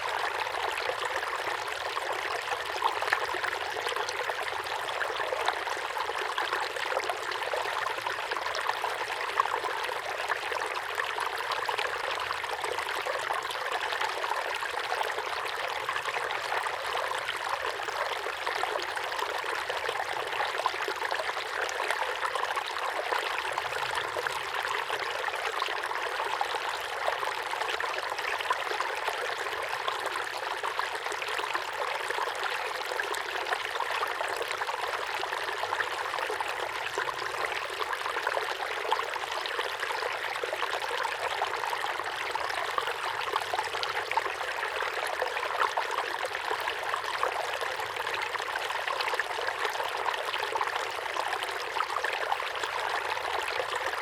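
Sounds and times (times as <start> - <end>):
waterfall pouring into pond: 0.0 - 54.0.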